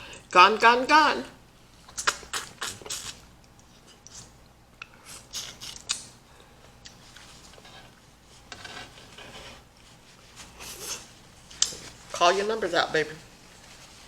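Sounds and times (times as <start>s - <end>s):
wet mouth clicks and smacks: 1.9s - 6.2s.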